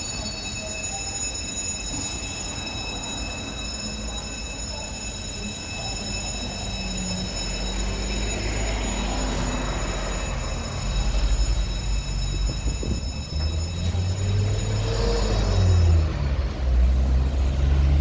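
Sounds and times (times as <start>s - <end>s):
high-pitched whine tones: 0.0s - 18.0s
diesel engine rumble: 7.0s - 18.0s.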